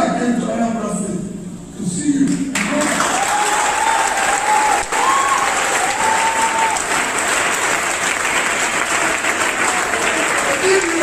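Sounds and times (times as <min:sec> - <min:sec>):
audience applauding: 0:02.5 - 0:11.0
high held cheering tones: 0:02.8 - 0:07.2.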